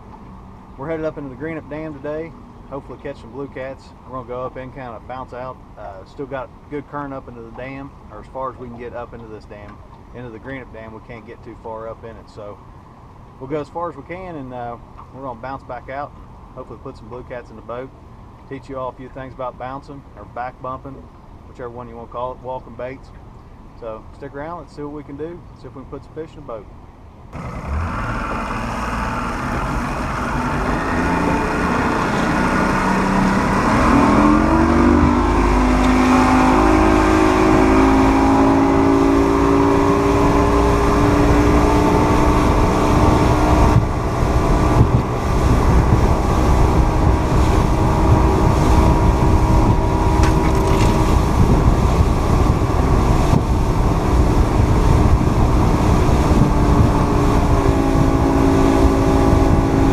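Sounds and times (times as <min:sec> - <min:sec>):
rush of wind and water: 0:00.0 - 0:59.9
outboard motor running: 0:27.3 - 0:59.9.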